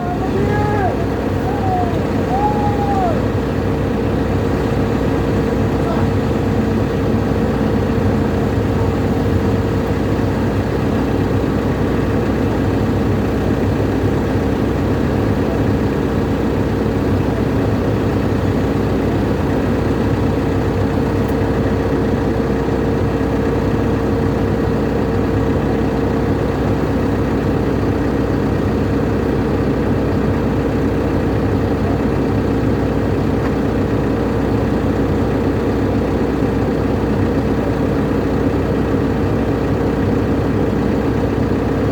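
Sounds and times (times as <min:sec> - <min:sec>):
constant whine: 0:00.0 - 0:23.7
diesel engine running: 0:00.0 - 0:41.9.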